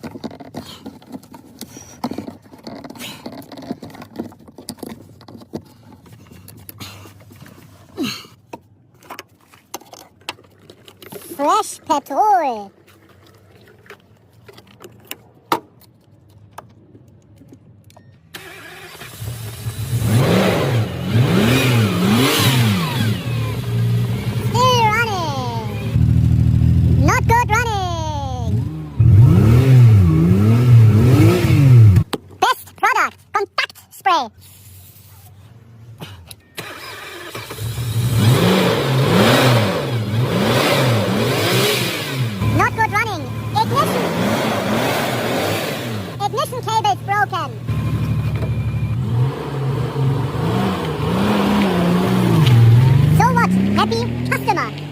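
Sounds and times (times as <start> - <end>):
car engine starting and revving: 18.4 - 32.1, 36.6 - 54.9.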